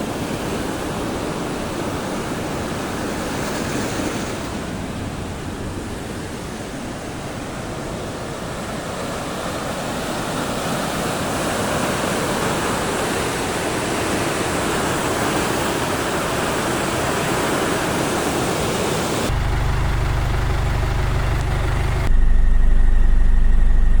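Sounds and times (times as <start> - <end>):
vehicle engine humming: 19.3 - 24.0.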